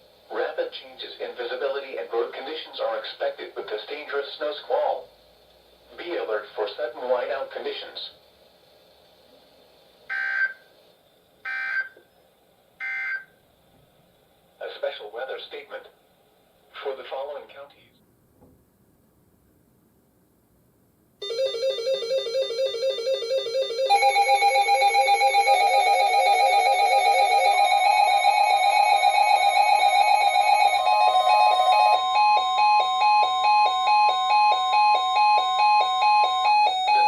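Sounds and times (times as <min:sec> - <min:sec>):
electronic music with bell tones: 0:24.0 - 0:32.8.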